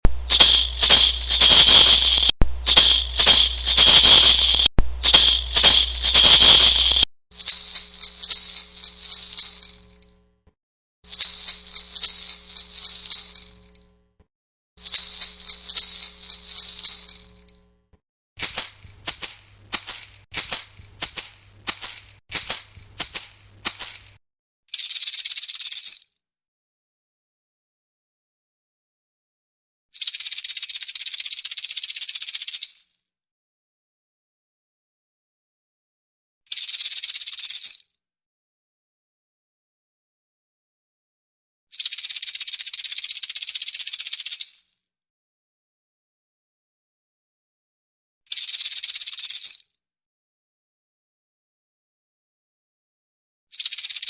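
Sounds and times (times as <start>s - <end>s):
maracas shaking: 0.1s - 10.0s, 11.1s - 13.7s, 14.8s - 17.4s, 18.4s - 26.1s, 30.0s - 32.8s, 36.5s - 37.8s, 41.8s - 44.6s, 48.3s - 49.6s.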